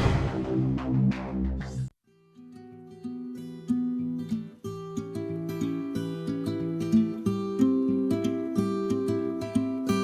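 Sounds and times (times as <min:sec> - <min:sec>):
acoustic guitar strumming: 0:02.2 - 0:10.0.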